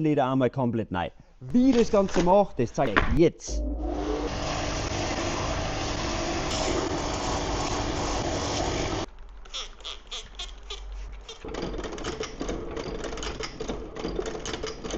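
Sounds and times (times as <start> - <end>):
machine motor humming and hissing: 3.8 - 9.1.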